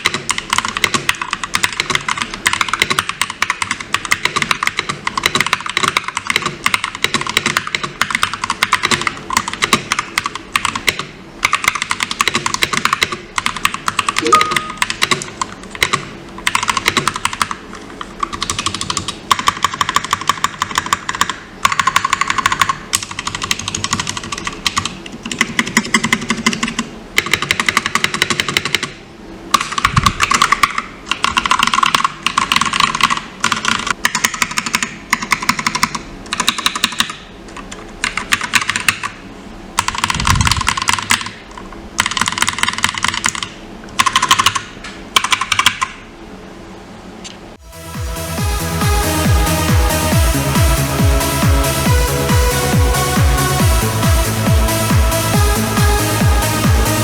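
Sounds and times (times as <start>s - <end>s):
mechanical keyboard typing: 0.0s - 29.0s, 29.6s - 39.2s, 39.8s - 41.4s, 42.0s - 45.9s.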